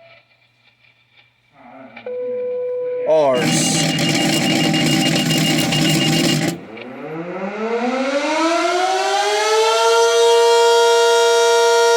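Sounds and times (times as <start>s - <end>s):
fire siren winding up: 2.1s - 11.9s
noisy buzz with high tone: 3.1s - 8.0s.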